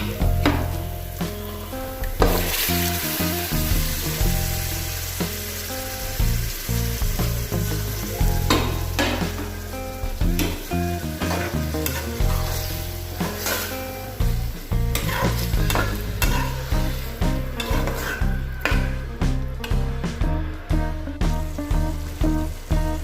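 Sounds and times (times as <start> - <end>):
meat sizzling in hot oil: 0.0 - 18.9
spoon scraping a pan: 11.3 - 13.8, 15.0 - 16.9, 17.6 - 18.8.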